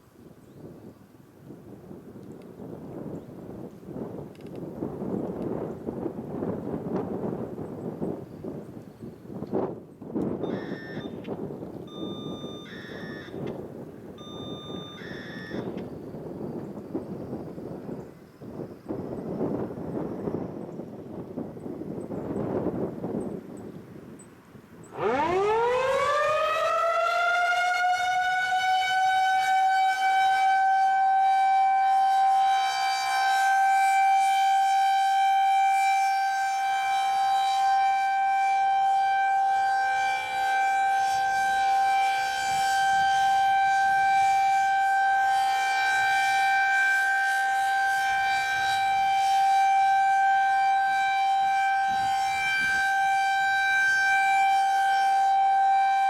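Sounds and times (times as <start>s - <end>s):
warning siren winding up: 10.2s - 16.7s, 24.8s - 56.0s.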